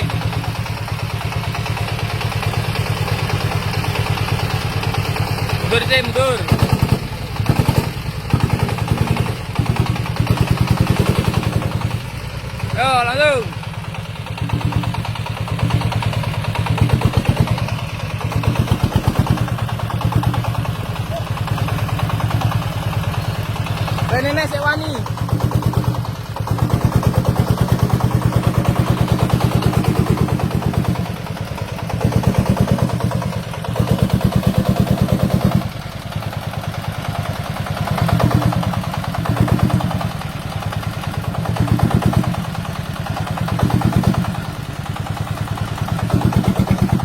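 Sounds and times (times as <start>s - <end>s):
diesel engine knocking: 0.0s - 47.0s.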